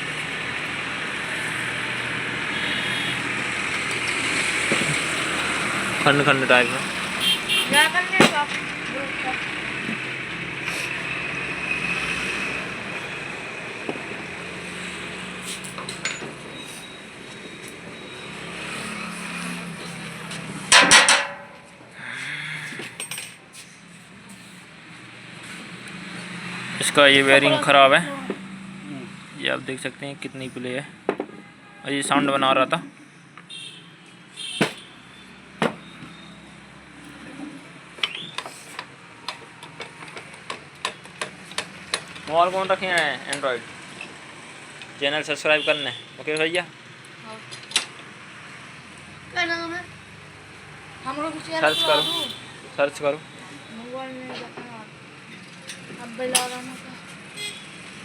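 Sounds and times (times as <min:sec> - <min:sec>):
bearing squeak: 0:15.5 - 0:20.1, 0:35.1 - 0:42.3.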